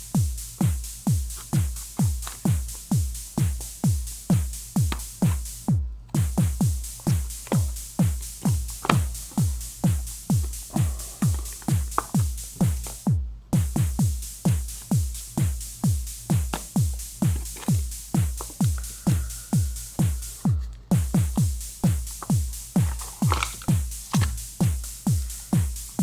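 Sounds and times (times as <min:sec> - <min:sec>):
electronic music with kick drum: 0:00.0 - 0:26.0.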